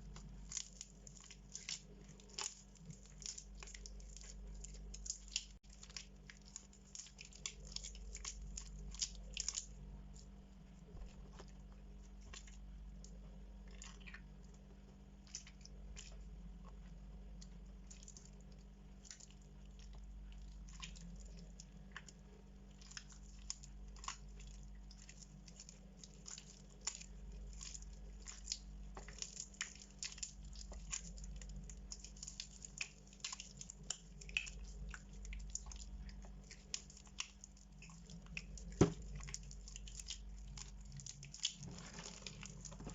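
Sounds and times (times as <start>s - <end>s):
soap crackling: 0.0s - 10.3s, 20.6s - 42.9s
wet soap squishing: 0.0s - 42.9s.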